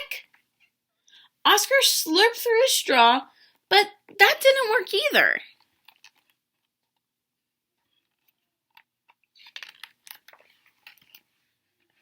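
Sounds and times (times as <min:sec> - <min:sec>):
paper page turning: 0:07.9 - 0:11.3.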